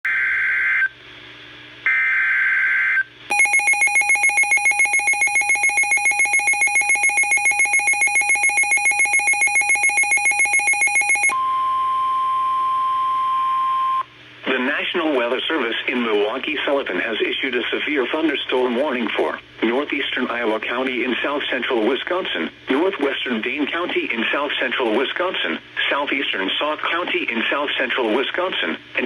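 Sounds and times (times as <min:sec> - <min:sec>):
screeching data tones: 0:03.3 - 0:11.4
pulsing electronic alarm beep: 0:03.3 - 0:11.7
steady warning alarm tone: 0:03.3 - 0:11.8.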